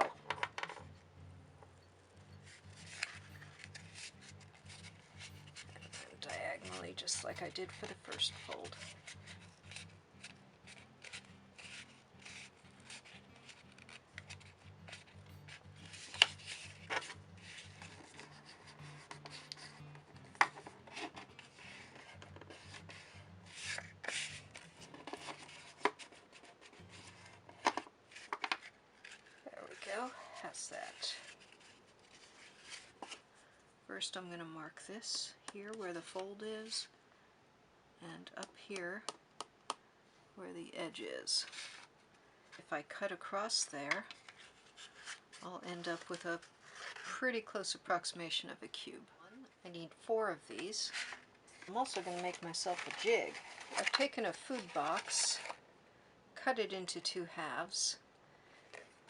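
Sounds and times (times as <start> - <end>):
soft background music: 0.0 - 33.2, 45.5 - 55.6
pen scraping along cardboard: 2.7 - 19.8
pen rubbing cardboard: 7.7 - 15.1, 20.6 - 28.4.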